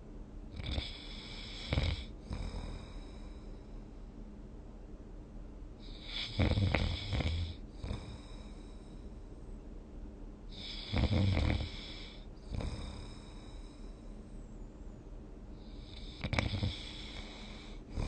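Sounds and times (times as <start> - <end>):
person snoring: 0.6 - 3.5, 5.8 - 8.8, 10.5 - 14.0, 15.6 - 18.0
faint breath: 0.8 - 4.0, 7.5 - 9.8, 11.6 - 14.6, 15.5 - 18.0.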